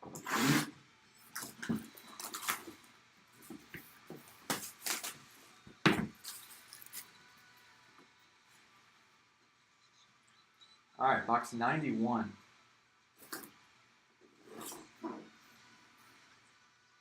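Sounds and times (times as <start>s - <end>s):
cardboard packaging rustling: 3.4s - 5.4s.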